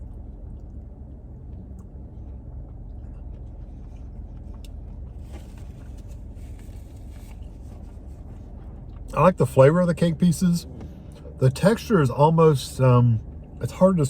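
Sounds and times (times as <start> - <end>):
car engine idling: 0.0 - 14.0
rustle: 5.1 - 8.5.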